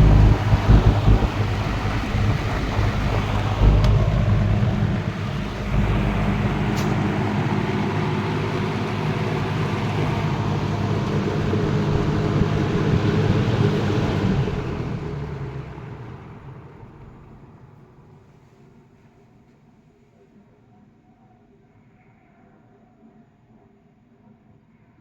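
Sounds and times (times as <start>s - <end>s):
fan motor humming: 0.0s - 18.2s
fan air rushing: 0.0s - 18.3s.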